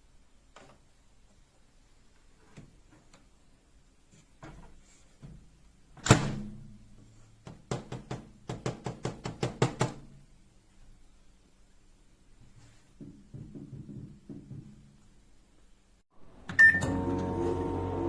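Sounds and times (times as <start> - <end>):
microwave door shutting: 16.5 - 18.0.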